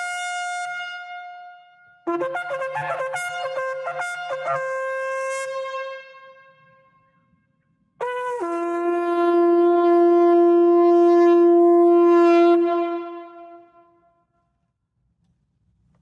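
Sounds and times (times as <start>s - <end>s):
shofar blast: 2.1s - 6.4s, 8.0s - 14.0s.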